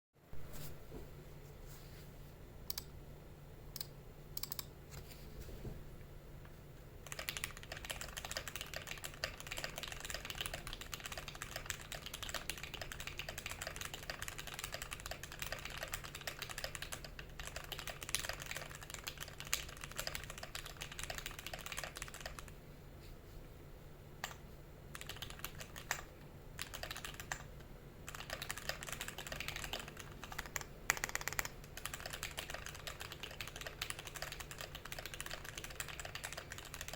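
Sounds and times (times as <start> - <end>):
mechanical keyboard typing: 3.8 - 4.7, 7.0 - 22.6, 24.2 - 36.9.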